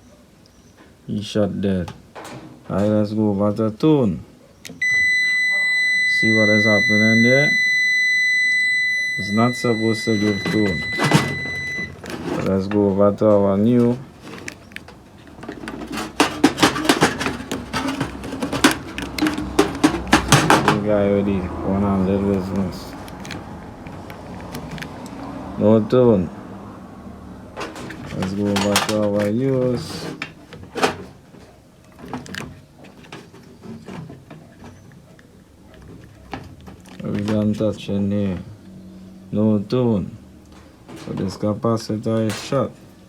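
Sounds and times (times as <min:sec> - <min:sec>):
light handling clicks and knocks: 0:10.0 - 0:25.3, 0:27.5 - 0:37.7
sharp clicks and clatter: 0:13.8 - 0:20.9.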